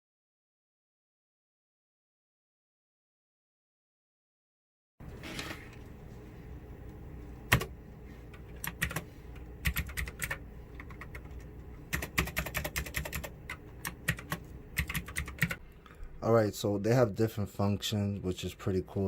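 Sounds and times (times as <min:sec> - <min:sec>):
mechanical keyboard keys clicking: 0:08.6 - 0:09.0, 0:09.6 - 0:15.6.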